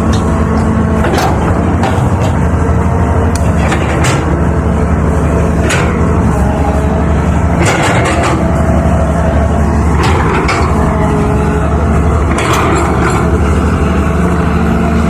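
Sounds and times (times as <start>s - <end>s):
metal clanks and knocks: 0.0s - 2.7s, 3.4s - 4.6s, 5.5s - 6.2s, 7.4s - 8.7s, 9.8s - 11.2s, 12.2s - 13.6s
excavator diesel engine running: 0.0s - 15.0s.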